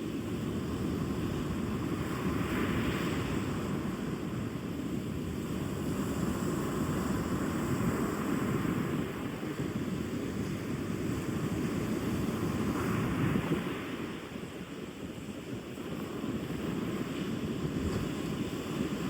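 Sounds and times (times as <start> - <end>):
heavy sea waves: 0.0 - 19.0.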